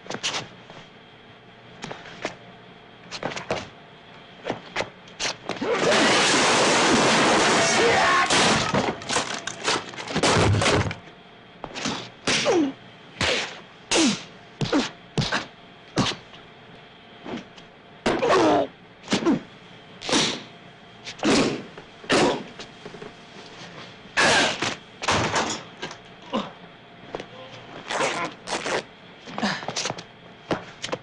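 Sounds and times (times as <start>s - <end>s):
crashing and clattering: 5.8s - 10.9s
sharp thuds and whacks: 13.2s - 16.2s.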